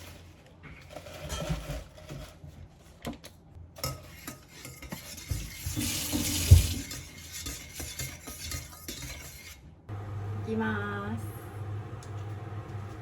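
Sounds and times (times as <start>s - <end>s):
utensils clinking and scraping: 0.8s - 2.5s, 3.8s - 9.6s.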